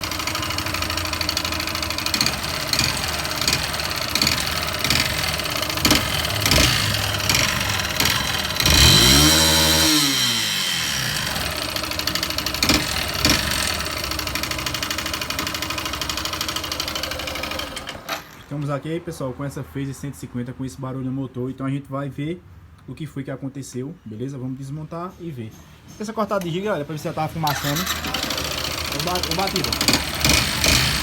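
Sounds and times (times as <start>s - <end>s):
sharp engine knocks: 0.0s - 9.2s, 11.1s - 15.8s
motorcycle engine idling and revving: 0.0s - 18.4s, 27.1s - 31.0s.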